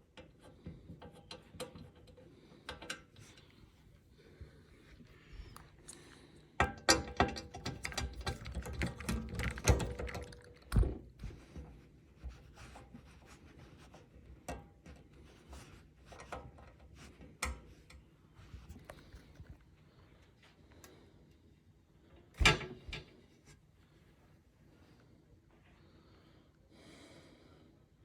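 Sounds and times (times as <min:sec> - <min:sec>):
dust filters clicking and rattling: 0:00.0 - 0:03.6, 0:05.6 - 0:11.8.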